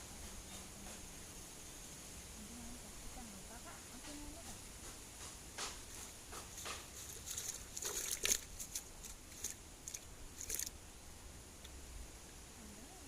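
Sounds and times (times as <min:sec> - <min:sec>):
faint background hiss: 0:00.0 - 0:13.0
small clicks and rustling: 0:05.2 - 0:10.7.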